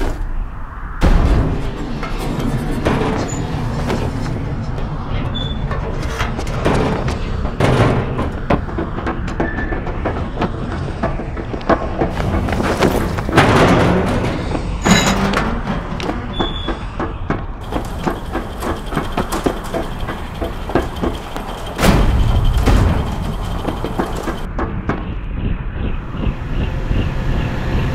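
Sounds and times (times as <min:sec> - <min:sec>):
dense clattering and clicks: 0:05.8 - 0:24.5
heavy hit: 0:17.6 - 0:24.5.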